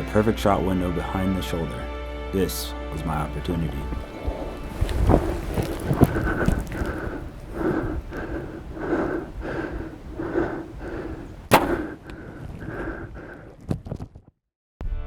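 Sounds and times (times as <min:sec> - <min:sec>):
bow string snap: 0:11.5 - 0:11.9.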